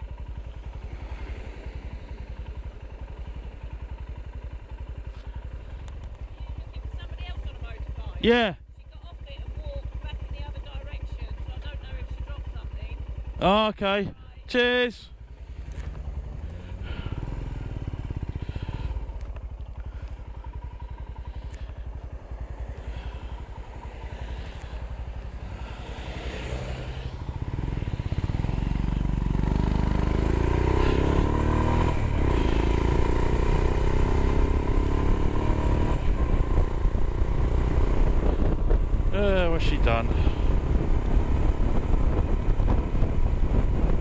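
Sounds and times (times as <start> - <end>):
motorcycle accelerating: 0.0 - 44.0
motorcycle engine idling: 0.0 - 44.0.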